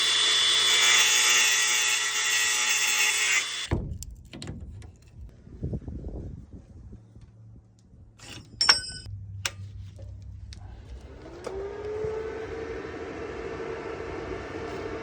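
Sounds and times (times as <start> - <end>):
power drill running: 0.0 - 3.7, 11.0 - 15.0.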